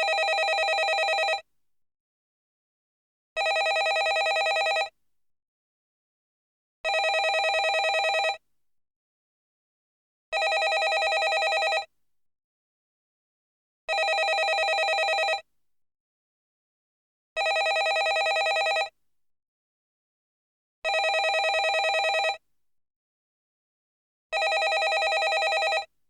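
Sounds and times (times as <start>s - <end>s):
landline telephone ringing: 0.0s - 1.4s, 3.4s - 4.9s, 6.9s - 8.4s, 10.4s - 11.9s, 13.9s - 15.4s, 17.4s - 18.9s, 20.9s - 22.4s, 24.4s - 25.9s.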